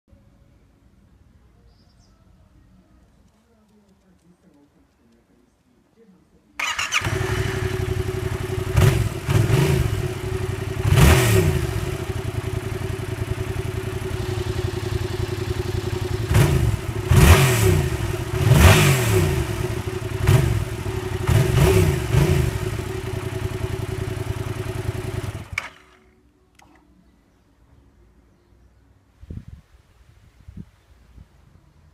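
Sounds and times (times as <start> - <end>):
motorcycle engine idling and revving: 6.6 - 26.8.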